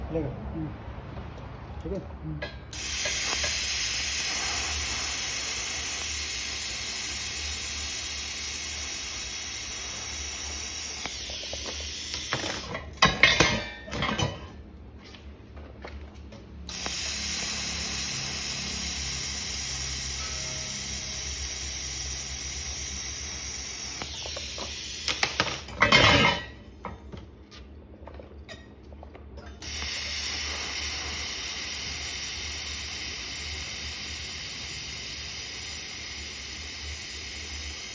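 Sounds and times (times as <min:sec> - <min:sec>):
welding arc hissing: 0:02.7 - 0:13.4, 0:16.7 - 0:26.8, 0:29.6 - 0:37.9.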